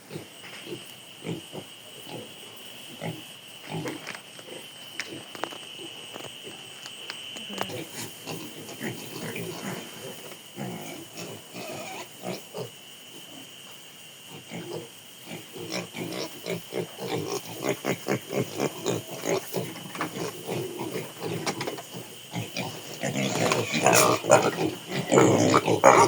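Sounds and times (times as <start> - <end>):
piglets grunting: 14.3 - 26.0.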